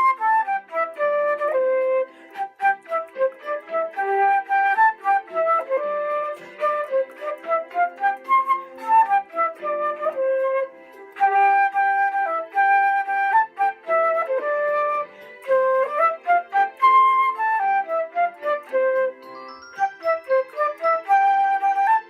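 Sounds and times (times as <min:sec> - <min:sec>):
electronic keyboard melody: 0:00.0 - 0:22.0
held keyboard accompaniment: 0:00.0 - 0:22.0.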